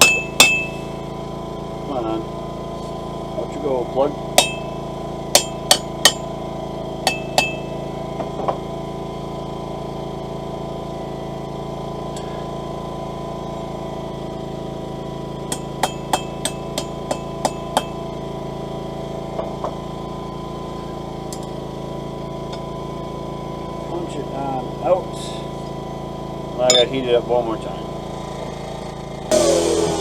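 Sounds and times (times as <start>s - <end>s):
hammer blows ringing on metal: 0.0s - 0.8s, 4.4s - 6.2s, 7.0s - 7.7s, 15.5s - 18.0s
steady hum: 29.3s - 30.0s.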